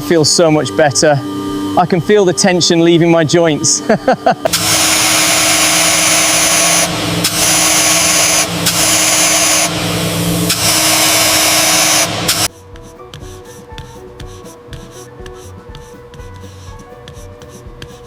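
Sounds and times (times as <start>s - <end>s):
power tool motor hissing: 4.5s - 12.5s.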